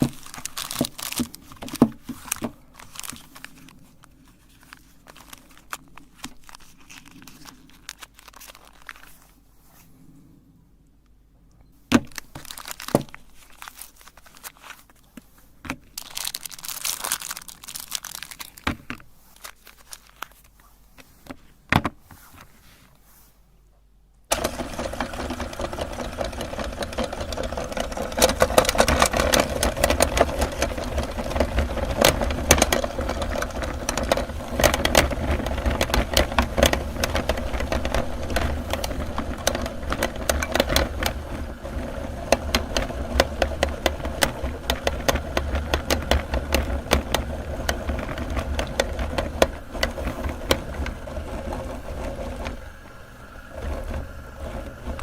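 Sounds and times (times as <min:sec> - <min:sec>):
soap crackling in grinder: 0:00.0 - 0:09.7, 0:12.0 - 0:22.6, 0:24.3 - 0:55.0
meat grinder motor humming: 0:24.3 - 0:55.0.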